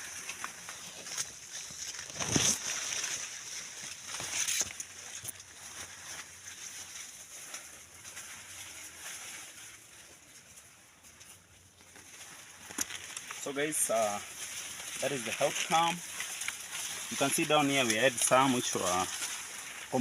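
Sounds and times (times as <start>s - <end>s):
leaves rustling: 0.0s - 20.0s.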